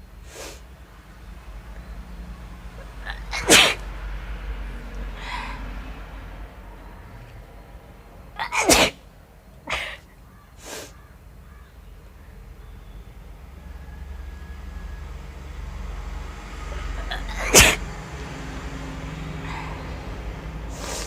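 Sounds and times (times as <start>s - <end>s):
woman sneezing: 3.1s - 3.8s, 8.4s - 9.0s, 9.7s - 10.0s, 17.0s - 17.8s.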